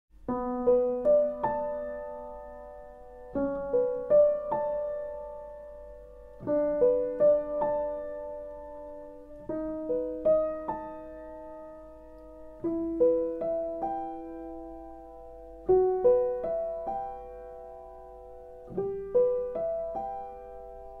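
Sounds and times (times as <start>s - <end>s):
slow piano notes: 0.2s - 21.0s.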